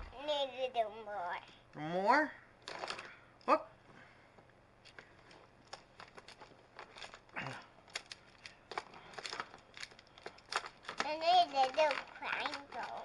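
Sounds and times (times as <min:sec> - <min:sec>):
plastic tiles clattering: 0:07.9 - 0:13.0.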